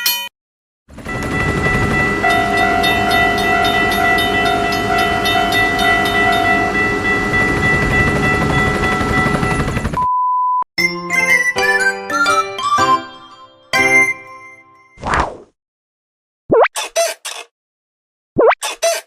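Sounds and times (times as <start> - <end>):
train rumbling by: 0.9 - 10.0
train horn: 2.1 - 6.8
short pure beep: 10.0 - 10.7.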